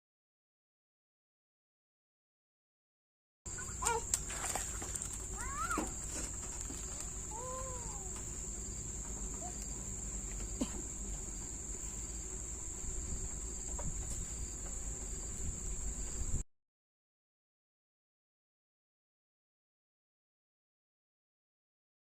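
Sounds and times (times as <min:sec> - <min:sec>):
insects trilling: 0:03.5 - 0:16.4
low outdoor rumble: 0:03.5 - 0:16.4
rising and falling animal call: 0:07.3 - 0:08.2.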